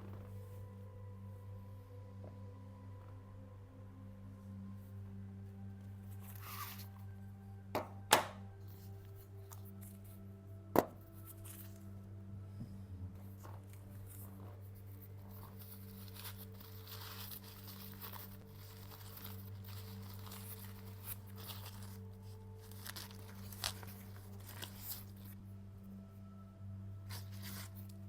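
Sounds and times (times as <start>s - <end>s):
steady low hum: 0.0s - 28.0s
rustling and crinkling: 5.8s - 7.2s, 8.4s - 12.1s, 13.1s - 25.5s, 27.0s - 28.0s.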